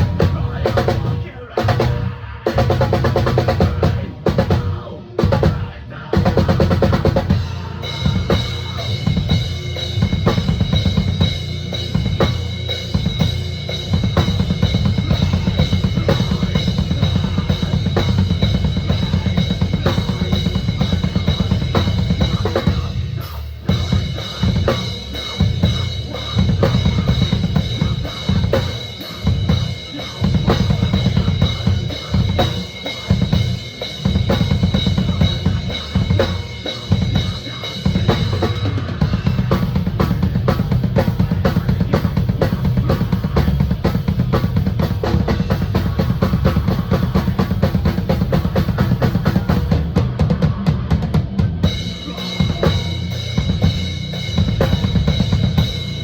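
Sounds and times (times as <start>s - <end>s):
metal band playing live: 0.0s - 56.0s
rapid bass drum hits: 0.0s - 56.0s.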